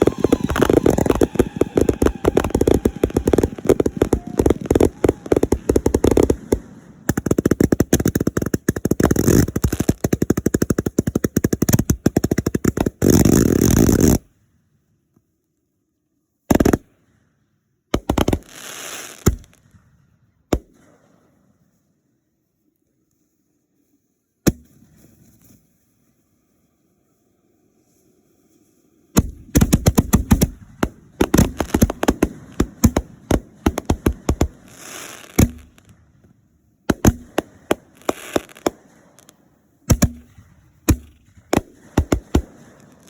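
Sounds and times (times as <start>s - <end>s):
firework pops: 0.0s - 14.2s, 29.2s - 43.0s
fireworks bangs and crackles: 0.0s - 14.3s, 16.5s - 17.2s, 18.0s - 21.5s, 29.1s - 43.0s.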